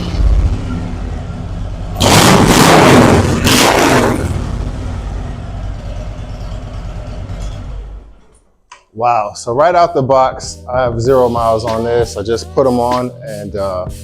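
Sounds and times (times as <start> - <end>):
motorcycle engine idling and revving: 0.0 - 8.3.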